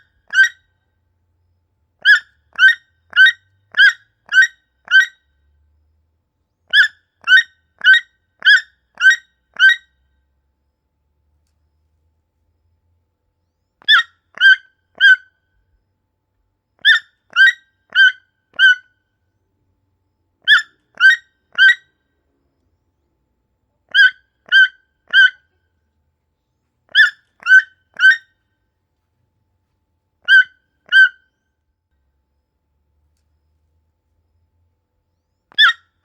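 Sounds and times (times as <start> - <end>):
toucan calling: 0.0 - 0.7, 2.0 - 5.2, 6.7 - 9.9, 13.8 - 15.3, 16.8 - 18.9, 20.4 - 21.9, 23.9 - 25.5, 26.9 - 28.3, 30.2 - 31.4, 35.5 - 35.9.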